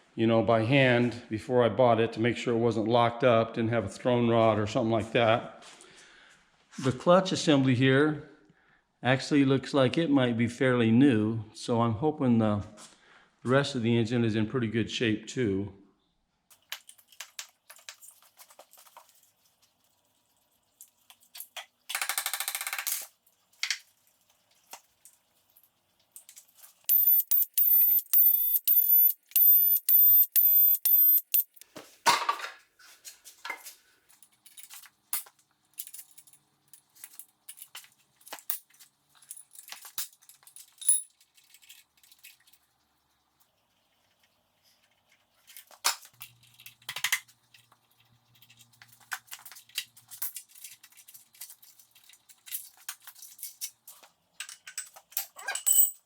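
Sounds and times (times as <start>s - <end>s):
metal parts clicking and clanking: 26.2s - 31.6s, 33.5s - 42.6s, 48.4s - 56.0s.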